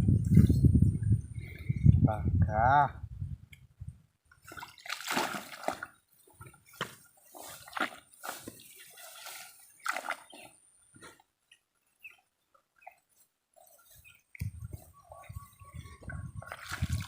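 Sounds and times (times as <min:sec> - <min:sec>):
water sloshing and splashing: 0:04.4 - 0:10.6, 0:16.4 - 0:17.0.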